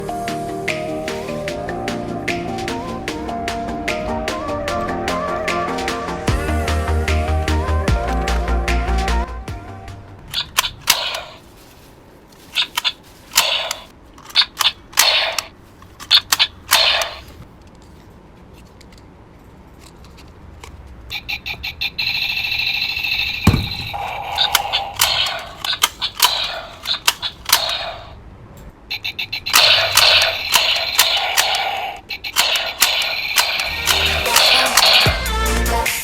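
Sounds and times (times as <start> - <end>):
electronic toy gun zapping shots: 10.3 - 11.4, 12.6 - 15.5, 16.1 - 17.3, 21.4 - 28.2, 29.2 - 35.3
low thump: 23.5 - 24.0.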